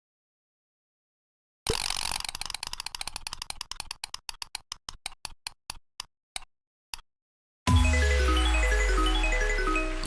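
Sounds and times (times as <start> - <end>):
music with bass and plucked melody: 7.7 - 10.0.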